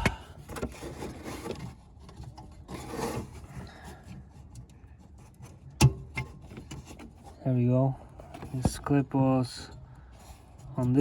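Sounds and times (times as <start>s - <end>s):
hand rubbing and scraping: 0.0s - 5.8s.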